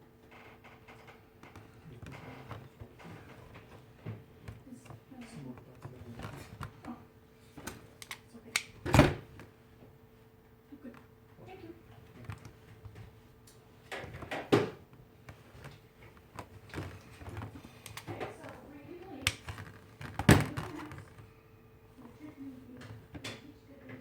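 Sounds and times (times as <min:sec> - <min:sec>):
faint steady hum: 0:00.0 - 0:24.0.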